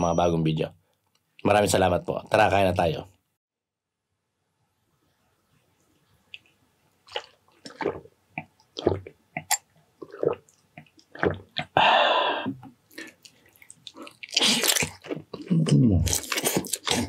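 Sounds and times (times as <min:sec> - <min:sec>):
wet squishing eating sounds: 0:06.3 - 0:17.0.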